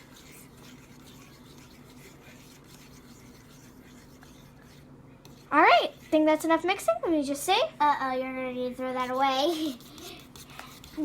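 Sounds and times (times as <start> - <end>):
fork scraping bowl: 0.0 - 6.6, 9.0 - 11.0
faint low hum: 0.0 - 11.0.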